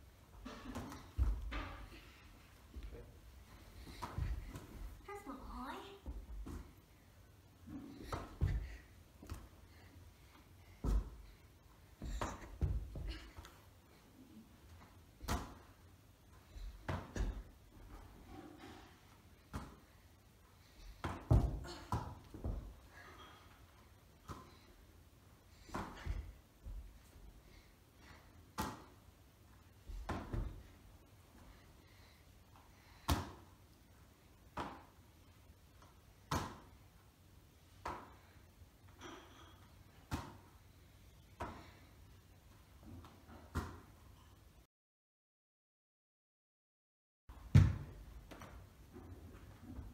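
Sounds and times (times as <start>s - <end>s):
ball thumping on floor: 10.8s - 11.3s, 12.0s - 13.2s, 21.0s - 22.8s, 47.5s - 49.1s
football caught in gloves: 36.3s - 36.6s, 47.5s - 48.5s.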